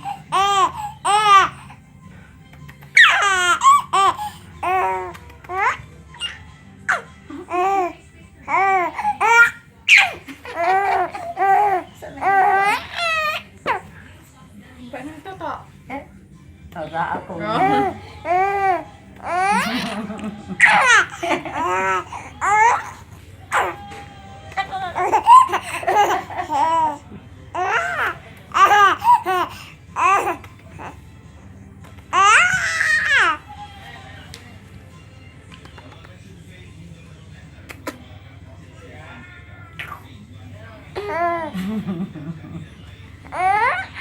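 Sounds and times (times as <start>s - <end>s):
high-pitched hearty laughter: 19.4s - 21.9s.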